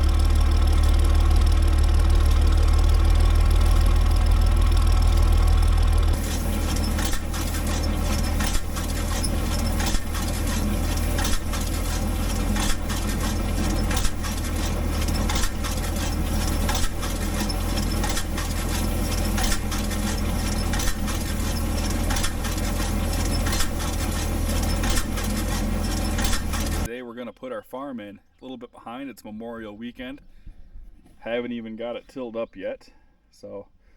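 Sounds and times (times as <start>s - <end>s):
tractor engine running: 0.0s - 26.9s.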